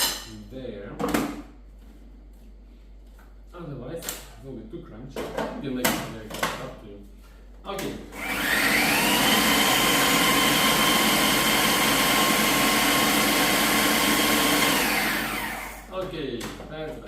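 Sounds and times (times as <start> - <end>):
blender grinding nuts: 8.2 - 15.9.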